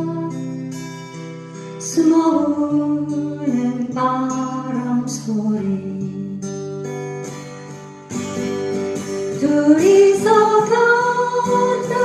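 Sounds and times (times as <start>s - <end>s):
person singing: 0.0s - 0.6s, 1.8s - 6.3s, 9.3s - 12.0s
acoustic guitar: 0.0s - 12.0s.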